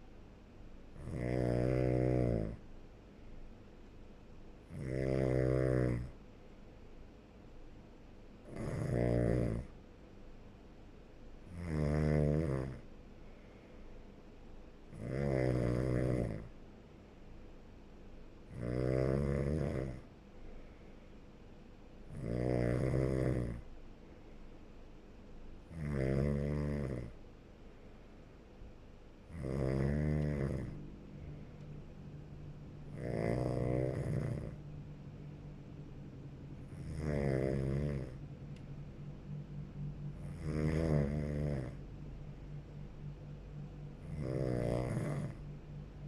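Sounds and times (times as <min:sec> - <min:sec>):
steady low hum: 0:00.0 - 0:46.0
person snoring: 0:01.0 - 0:02.6, 0:04.7 - 0:06.2, 0:08.5 - 0:09.7, 0:11.5 - 0:12.8, 0:14.9 - 0:16.5, 0:18.5 - 0:20.1, 0:22.1 - 0:23.6, 0:25.7 - 0:27.2, 0:29.3 - 0:31.4, 0:32.9 - 0:34.6, 0:36.7 - 0:38.2, 0:40.2 - 0:41.8, 0:44.0 - 0:45.4
quiet breathing: 0:01.4 - 0:03.7, 0:12.6 - 0:17.6, 0:19.1 - 0:25.0, 0:26.6 - 0:46.0.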